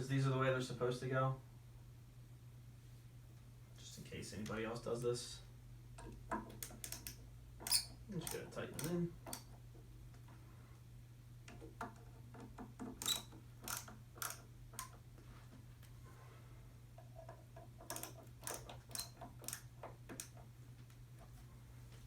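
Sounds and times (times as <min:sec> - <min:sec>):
steady low hum: 0:00.0 - 0:22.0
hardware clicks while screwing: 0:06.0 - 0:09.6, 0:11.5 - 0:15.0, 0:17.0 - 0:20.5.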